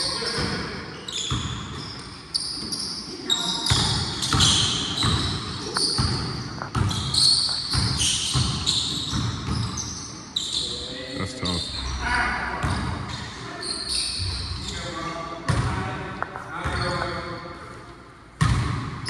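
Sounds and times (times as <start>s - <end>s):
sneakers squeaking: 0.0s - 19.0s
basketball dribbling: 3.7s - 9.8s.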